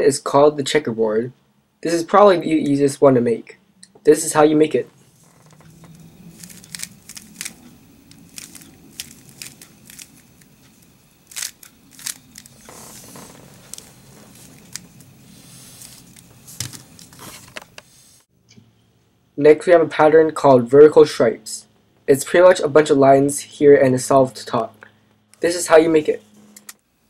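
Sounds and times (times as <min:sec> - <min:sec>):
puzzle cube layers clicking: 0:06.4 - 0:10.5.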